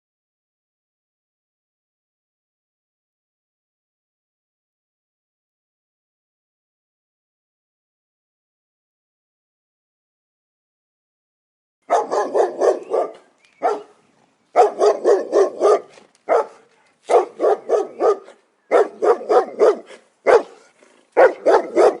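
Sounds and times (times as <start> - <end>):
dog barking alarm: 11.9 - 13.9, 14.6 - 20.6, 21.2 - 22.0.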